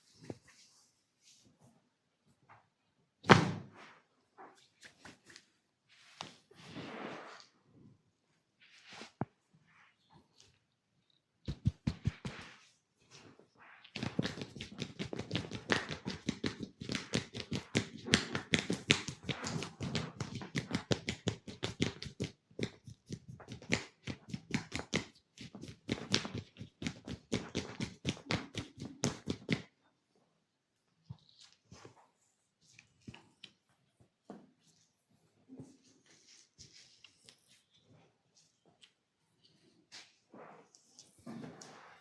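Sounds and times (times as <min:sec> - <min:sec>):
hands tapping and slapping body: 0:11.5 - 0:12.6, 0:14.0 - 0:29.7.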